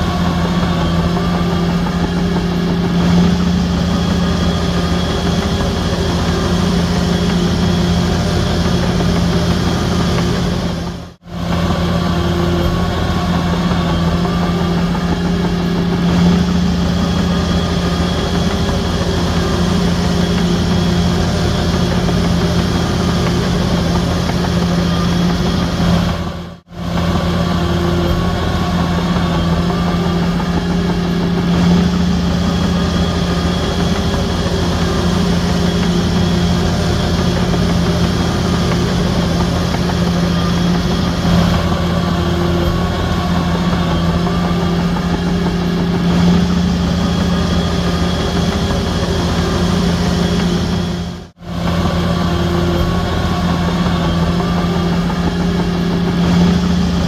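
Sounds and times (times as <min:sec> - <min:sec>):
diesel machinery engine hum: 0:00.0 - 0:57.0.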